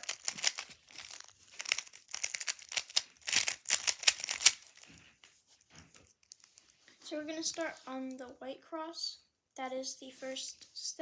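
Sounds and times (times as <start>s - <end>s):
puzzle cube clicking: 0.0s - 4.7s.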